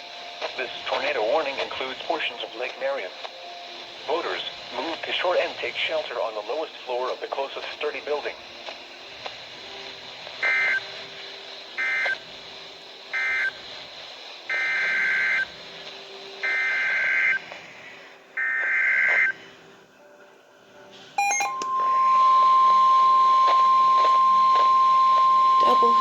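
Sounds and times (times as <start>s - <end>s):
steady alarm tone: 21.2s - 26.0s.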